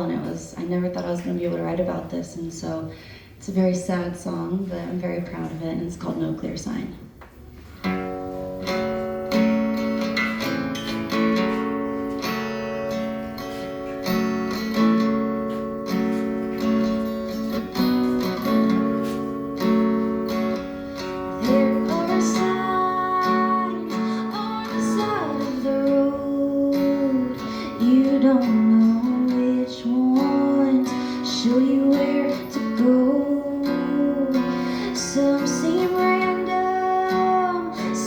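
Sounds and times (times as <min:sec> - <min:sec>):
acoustic guitar strumming chords: 0:07.5 - 0:38.0
person singing: 0:21.3 - 0:38.0.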